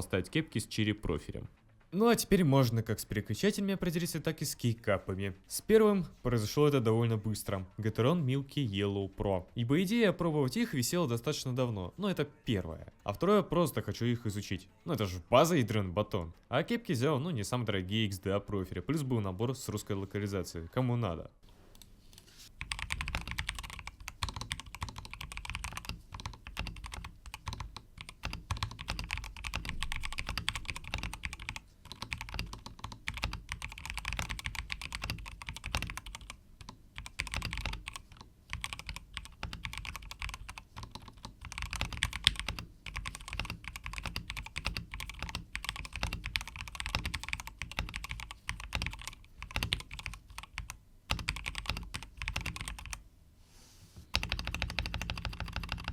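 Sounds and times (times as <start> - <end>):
fast typing on mechanical keyboard: 22.6 - 53.0, 54.1 - 55.9.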